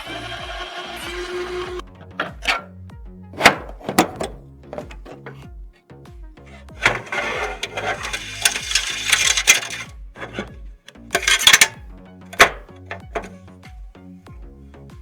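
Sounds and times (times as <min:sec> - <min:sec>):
background music with a beat: 0:00.0 - 0:15.0
computer parts clicking and clinking: 0:06.8 - 0:11.8, 0:12.4 - 0:13.4.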